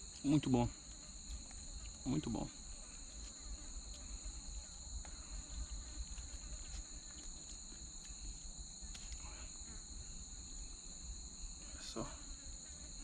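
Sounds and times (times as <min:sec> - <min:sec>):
insect chorus buzzing: 0:00.0 - 0:13.0
faint ticks: 0:04.9 - 0:08.3.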